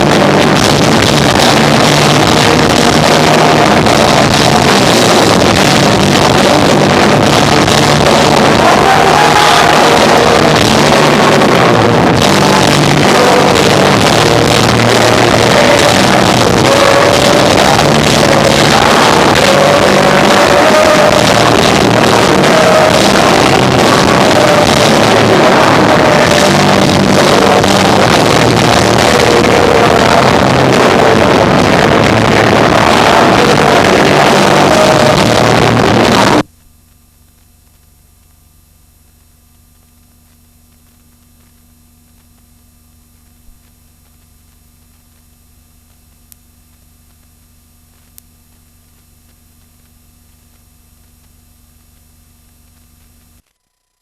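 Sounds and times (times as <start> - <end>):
distorted live rock band: 0.0 - 36.5
faint steady hum: 0.0 - 54.0
small clicks: 36.4 - 54.0.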